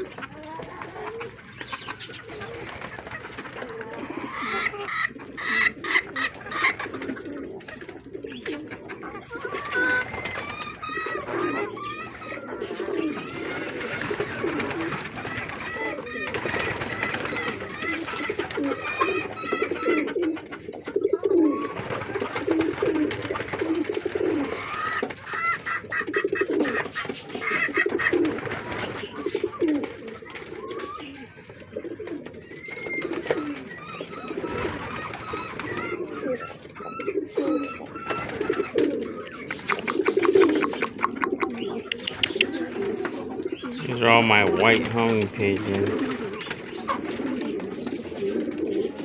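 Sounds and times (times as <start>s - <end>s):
pigeons cooing: 0.0s - 49.0s.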